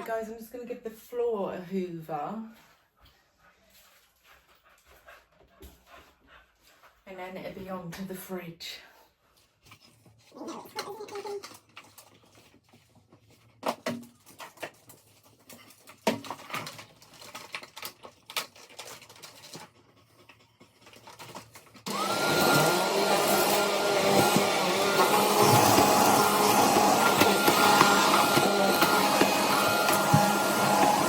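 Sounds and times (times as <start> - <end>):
vacuum cleaner running: 21.8 - 31.0.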